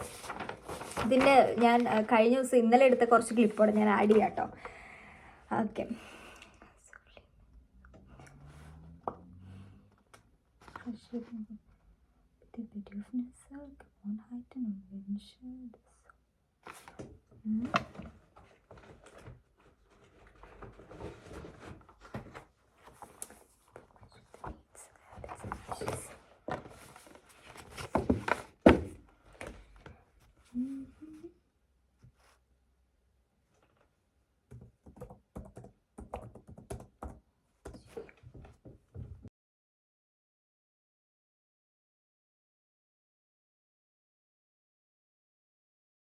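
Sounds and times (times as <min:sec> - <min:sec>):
objects being handled: 0:00.0 - 0:02.3, 0:16.6 - 0:30.5
laptop keyboard typing: 0:34.5 - 0:37.8.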